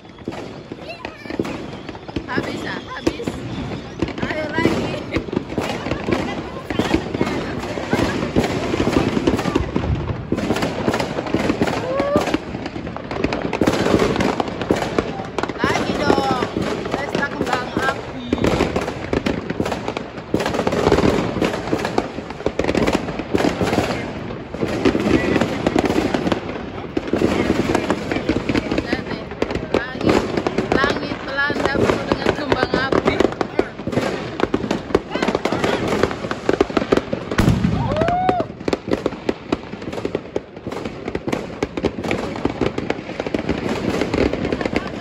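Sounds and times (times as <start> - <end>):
fireworks bangs and crackles: 0.0 - 45.0.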